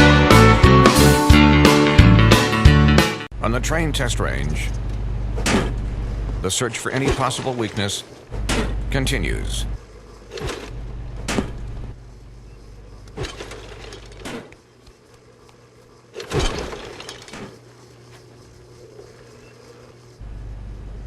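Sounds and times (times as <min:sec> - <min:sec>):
low steady hum: 0:03.3 - 0:21.0
sharp knocks and thuds: 0:05.4 - 0:05.9, 0:06.9 - 0:09.0, 0:10.3 - 0:12.0, 0:16.2 - 0:17.7.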